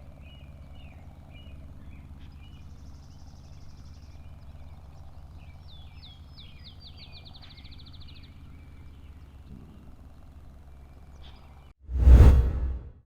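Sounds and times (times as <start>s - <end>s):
songbirds singing: 0.0s - 11.7s
steady low rumble: 11.9s - 13.0s.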